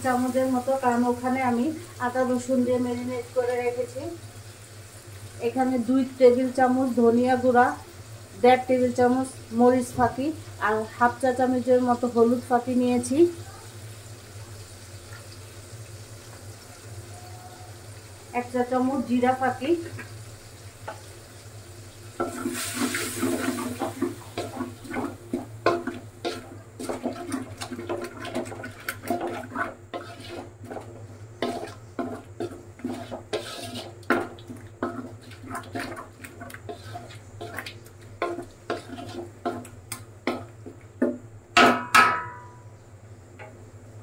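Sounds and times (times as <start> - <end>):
spoon stirring and scraping pot: 22.2 - 40.9
spoon knocking on pot: 40.3 - 42.6.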